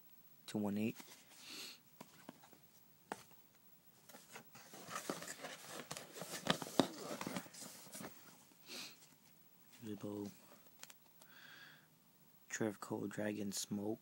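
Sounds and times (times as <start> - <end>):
boxes tapping and clicking: 4.1 - 8.2
packaging rustling: 4.1 - 8.4.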